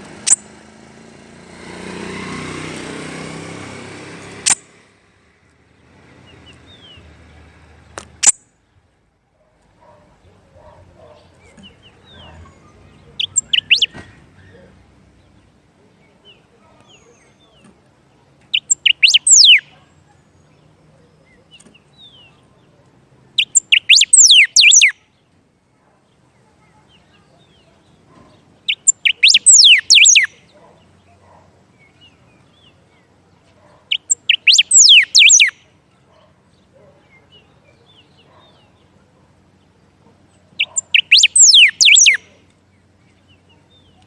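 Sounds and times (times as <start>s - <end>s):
songbird singing whistled notes: 11.4s - 15.4s, 18.5s - 22.5s, 23.4s - 25.1s, 26.9s - 30.8s, 33.9s - 35.7s, 40.5s - 44.0s.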